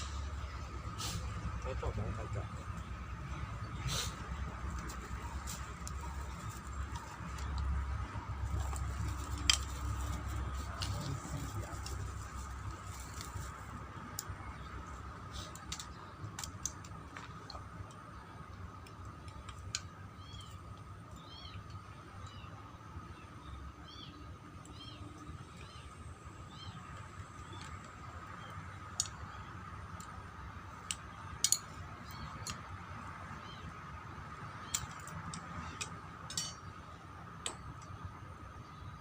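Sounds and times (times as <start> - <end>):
bird chirping: 19.3 - 29.7.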